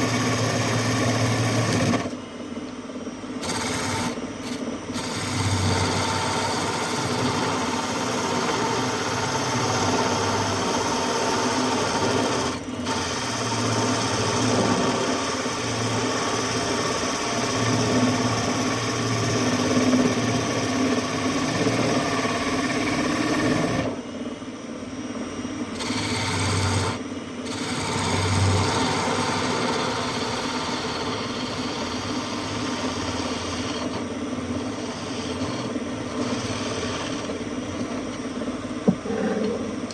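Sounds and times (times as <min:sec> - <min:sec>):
lathe motor hum: 0:00.0 - 0:02.2, 0:03.4 - 0:24.0, 0:25.7 - 0:39.9
turning tool scraping wood: 0:03.4 - 0:09.9, 0:25.8 - 0:26.9, 0:27.5 - 0:38.2.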